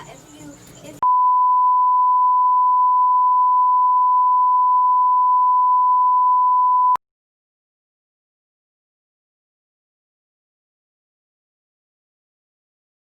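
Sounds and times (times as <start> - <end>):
electronic beep tone: 1.0 - 7.0.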